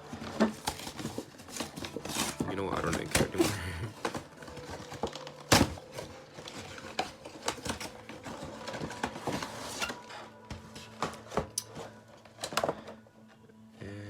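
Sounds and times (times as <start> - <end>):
plastic crinkling: 0.0 - 13.0
packaging being torn open: 0.4 - 10.1.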